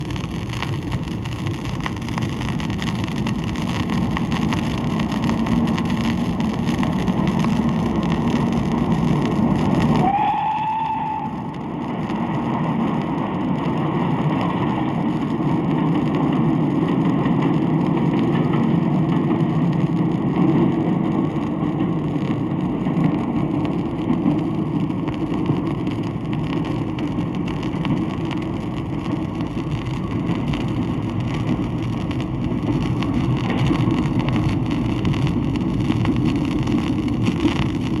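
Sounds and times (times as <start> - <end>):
record surface noise: 0.0 - 38.0
train rumbling past: 8.9 - 25.8
faint clatter: 11.4 - 38.0.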